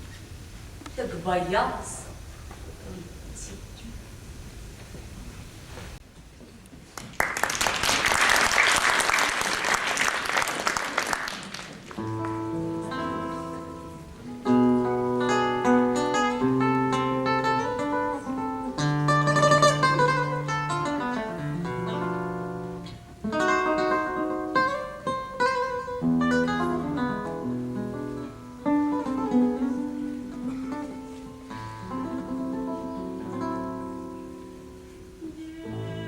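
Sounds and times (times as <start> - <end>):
acoustic guitar playing: 11.9 - 36.0.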